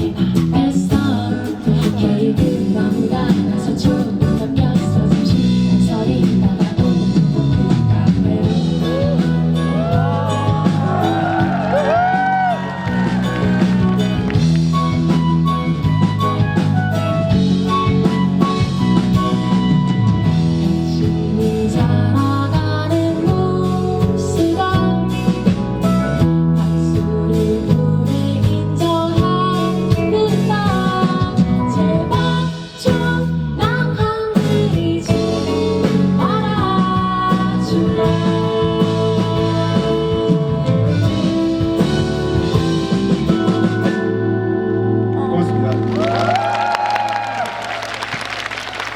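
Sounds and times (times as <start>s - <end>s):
woman singing: 0.0s - 12.7s, 20.6s - 25.8s, 26.5s - 43.0s
drum kit beat: 0.0s - 44.4s
live band with guitar: 0.0s - 48.9s.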